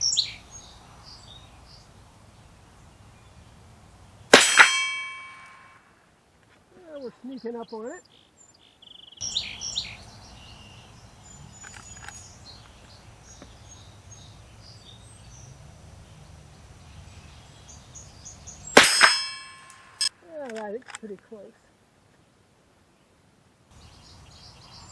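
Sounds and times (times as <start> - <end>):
birds chirping: 0.0 - 5.7, 6.7 - 20.1, 23.7 - 24.9
rifle shot: 4.3 - 5.7, 18.8 - 20.1
steel target ringing: 4.3 - 5.8, 18.8 - 20.1.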